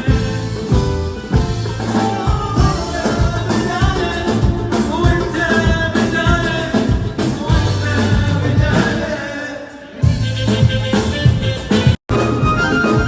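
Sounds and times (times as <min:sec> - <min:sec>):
bass: 0:00.0 - 0:13.0
drum kit beat: 0:00.0 - 0:13.0
violin melody: 0:12.1 - 0:13.0.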